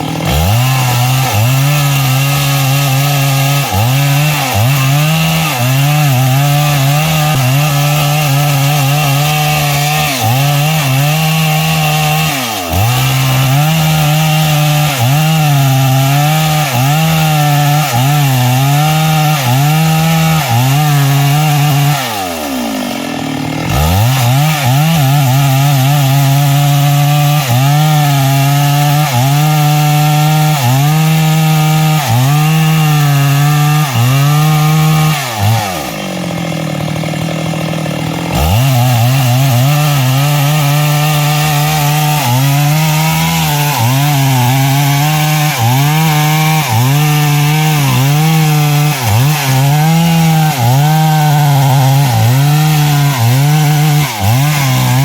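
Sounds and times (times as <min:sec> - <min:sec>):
chainsaw cutting log: 0:00.0 - 0:55.0.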